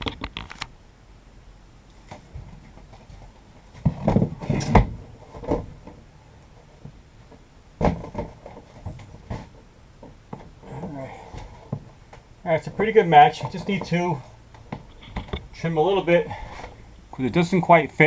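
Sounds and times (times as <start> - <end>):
board bumping against van wall: 2.1 - 6.0, 6.8 - 11.9.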